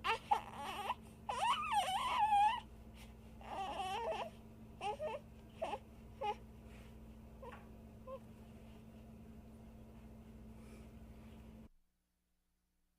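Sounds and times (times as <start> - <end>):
high-pitched wavering cries: 0.0 - 2.7.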